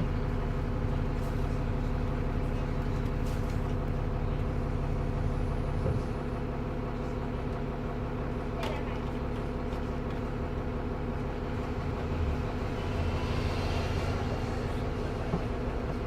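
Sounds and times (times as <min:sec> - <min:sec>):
bus engine running: 0:00.0 - 0:16.0.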